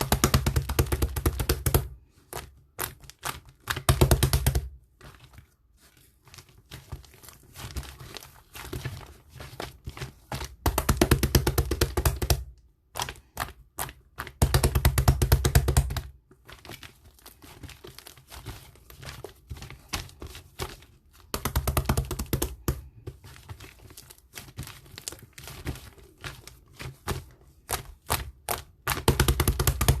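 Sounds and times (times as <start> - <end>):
slime crackling and squishing: 1.1 - 11.0, 16.0 - 30.0.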